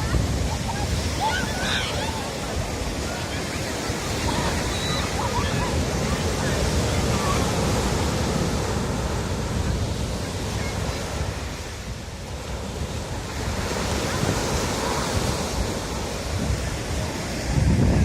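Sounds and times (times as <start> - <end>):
ocean surf washing onto beach: 0.0 - 18.0
wind buffeting microphone: 0.0 - 18.0.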